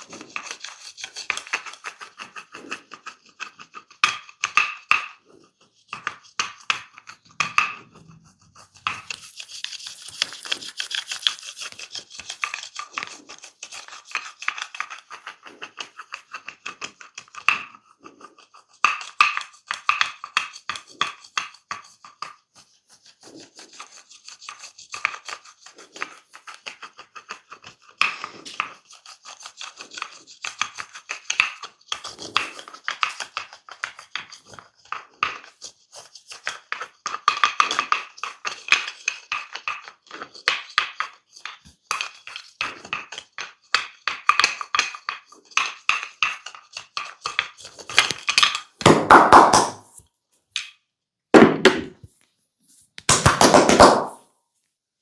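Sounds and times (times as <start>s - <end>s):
fingers scratching hair: 0.0s - 4.4s, 5.2s - 37.0s
hands rubbing scalp: 5.2s - 16.5s, 52.1s - 54.2s
hands tapping on scalp: 48.8s - 49.9s, 53.0s - 54.2s.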